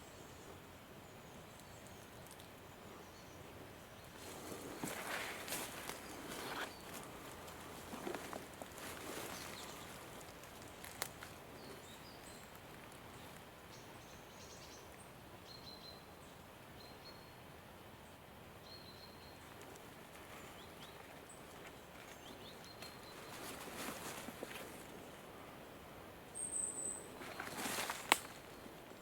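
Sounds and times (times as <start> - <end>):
footsteps rustling on forest floor: 4.1 - 13.0, 19.6 - 25.2, 27.1 - 29.0
twig snap: 10.4 - 11.3, 27.4 - 28.6.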